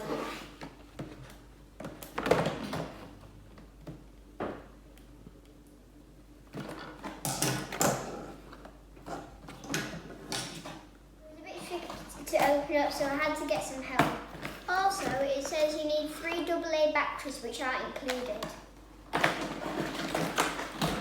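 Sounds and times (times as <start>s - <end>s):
cardboard box scrapes and knocks: 0.0s - 0.7s.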